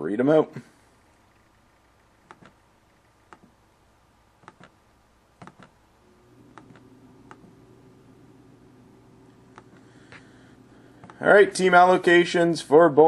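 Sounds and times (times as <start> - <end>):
faint steady hum: 0.0 - 13.0
computer mouse clicks: 1.2 - 3.6, 4.4 - 4.8, 5.4 - 5.8, 6.5 - 7.5.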